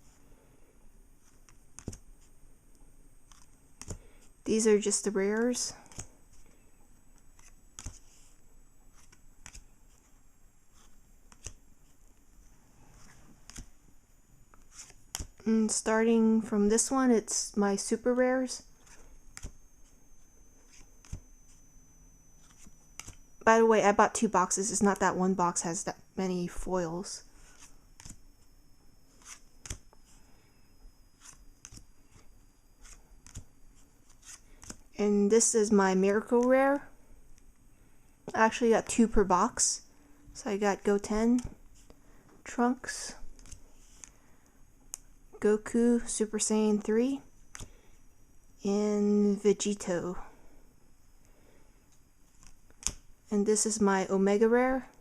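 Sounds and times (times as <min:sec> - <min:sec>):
cards sliding and tapping: 0:01.2 - 0:02.3, 0:03.3 - 0:04.1, 0:05.8 - 0:06.5, 0:07.2 - 0:12.0, 0:13.0 - 0:13.7, 0:14.6 - 0:15.3, 0:18.8 - 0:19.6, 0:20.7 - 0:21.6, 0:22.4 - 0:23.2, 0:27.5 - 0:28.2, 0:29.1 - 0:30.2, 0:31.2 - 0:34.8, 0:43.4 - 0:44.2, 0:52.3 - 0:53.0.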